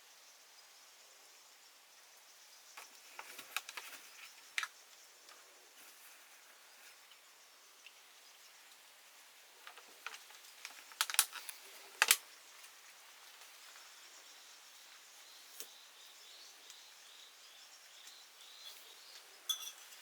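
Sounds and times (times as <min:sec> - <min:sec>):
soft hiss: 0:00.0 - 0:20.0
bird chirping: 0:12.3 - 0:20.0.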